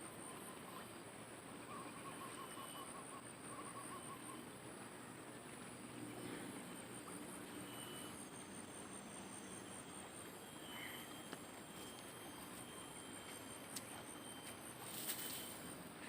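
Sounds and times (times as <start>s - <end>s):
steady hiss: 4.6s - 16.0s
thin high whine: 6.1s - 16.0s.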